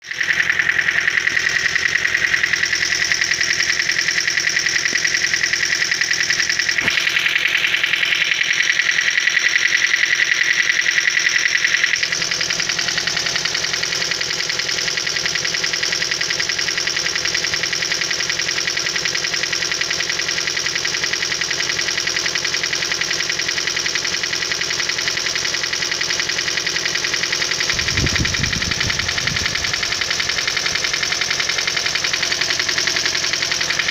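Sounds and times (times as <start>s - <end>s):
engine lifter ticking knock: 0.0s - 33.9s
low rumble: 27.7s - 31.2s.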